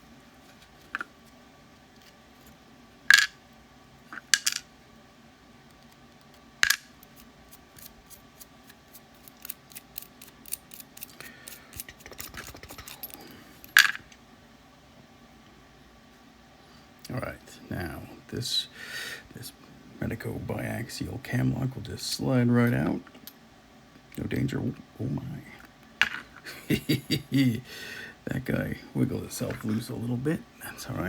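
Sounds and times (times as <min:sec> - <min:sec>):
lock parts clicking: 0:04.2 - 0:04.6.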